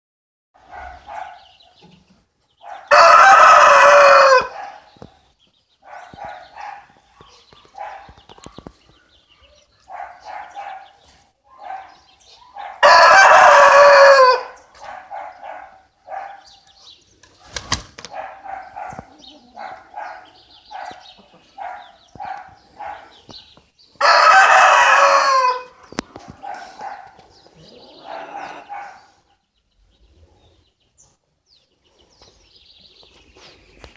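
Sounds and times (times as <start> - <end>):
rooster crowing: 2.8 - 4.8, 12.8 - 14.6, 24.0 - 25.8.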